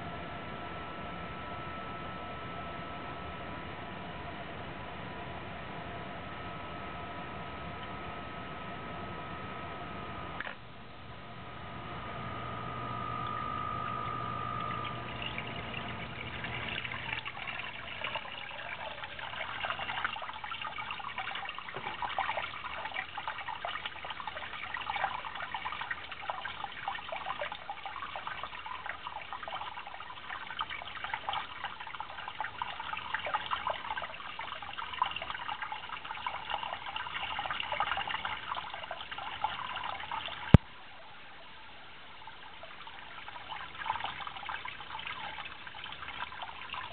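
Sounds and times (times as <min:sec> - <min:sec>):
low hum: 0:00.0 - 0:22.9
water trickling into a pit: 0:12.5 - 0:46.9.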